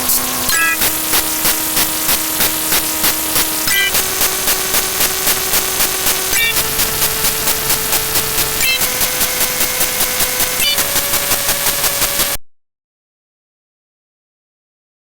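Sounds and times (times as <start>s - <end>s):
held tone stepping up in pitch: 0.0s - 12.4s
fast even clicks: 0.5s - 12.4s.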